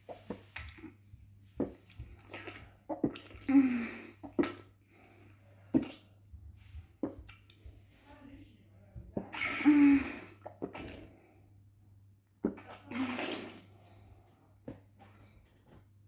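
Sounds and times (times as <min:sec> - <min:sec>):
person gulping a drink: 0:00.1 - 0:06.2, 0:07.0 - 0:07.7, 0:09.2 - 0:11.3, 0:12.4 - 0:13.9.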